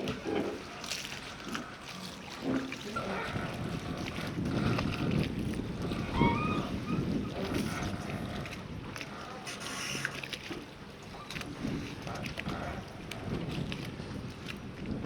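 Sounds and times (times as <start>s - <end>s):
water washing: 0.0s - 15.0s
wind: 0.0s - 15.0s
short squeak: 6.1s - 7.0s.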